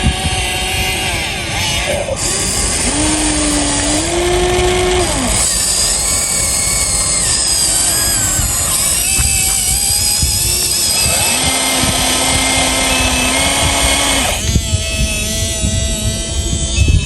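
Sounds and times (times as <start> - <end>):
toy excavator motors whining: 0.0 - 17.0.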